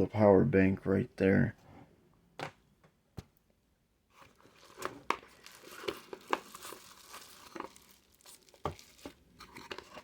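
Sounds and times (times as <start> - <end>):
packaging crinkling and rustling: 4.1 - 10.0.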